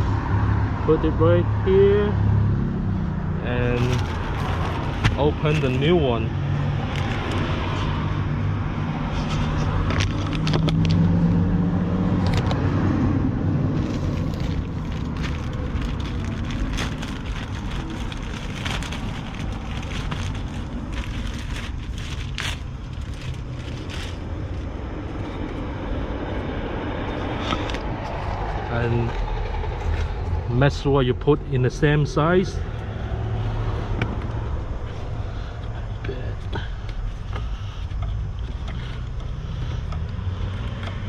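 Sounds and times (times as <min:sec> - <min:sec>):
plastic packaging crinkling and tearing: 0:03.7 - 0:05.9, 0:13.7 - 0:24.7.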